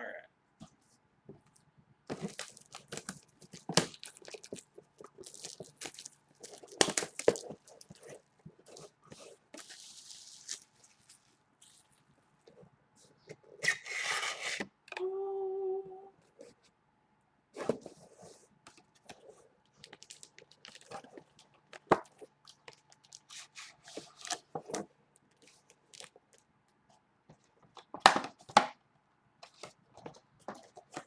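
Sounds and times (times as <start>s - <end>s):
plastic wrap crinkling: 1.5s - 12.6s, 19.6s - 24.5s
plastic wrap ripping: 2.1s - 8.9s, 9.6s - 12.1s, 19.8s - 24.5s.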